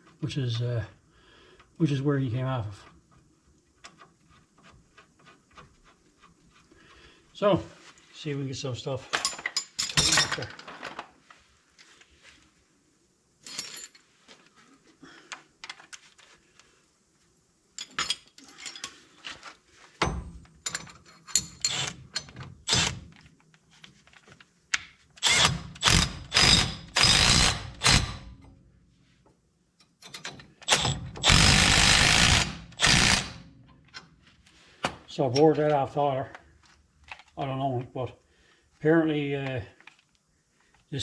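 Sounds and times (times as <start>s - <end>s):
tool and parts clatter: 9.1s - 11.2s, 13.4s - 14.4s, 17.8s - 24.4s, 29.8s - 31.5s
impact ratchet running bolts: 21.3s - 23.0s, 25.2s - 28.4s, 30.0s - 33.4s.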